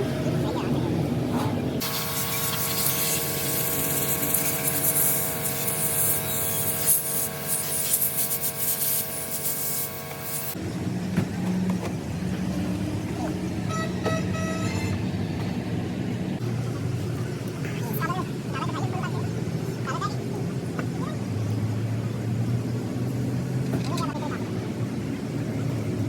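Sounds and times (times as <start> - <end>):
high-pressure spray hissing: 1.8 - 10.6.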